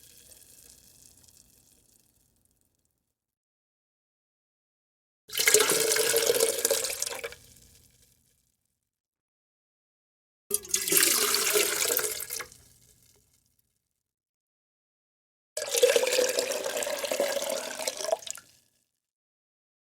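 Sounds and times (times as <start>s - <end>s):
water pouring into a glass: 5.3s - 7.5s, 10.5s - 12.6s, 15.6s - 18.6s.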